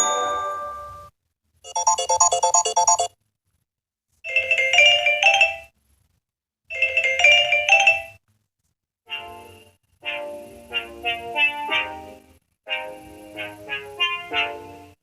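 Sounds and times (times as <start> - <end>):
phone ringtone chiming melody: 0.0 - 1.1, 1.7 - 3.1, 4.3 - 5.7, 6.7 - 8.2.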